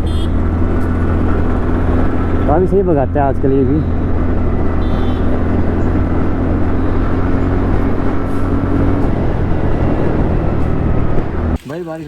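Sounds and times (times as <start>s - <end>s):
scooter engine running: 0.0s - 11.5s
wind rumble on microphone: 5.3s - 11.6s.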